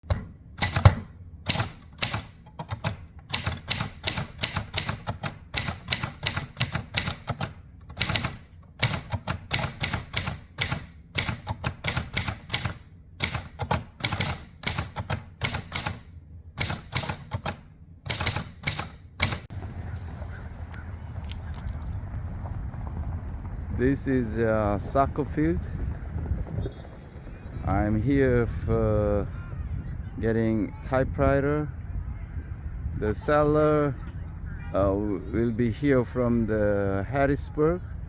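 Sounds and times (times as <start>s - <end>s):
typewriter key strikes: 0.0s - 19.5s.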